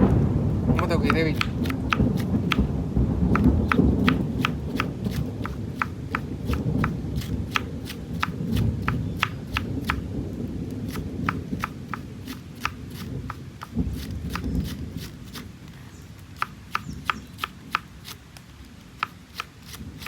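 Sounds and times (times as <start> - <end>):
low rumble: 0.0 - 5.8
knife chopping on cutting board: 0.8 - 2.7, 3.4 - 10.1, 10.9 - 15.4, 16.4 - 18.2.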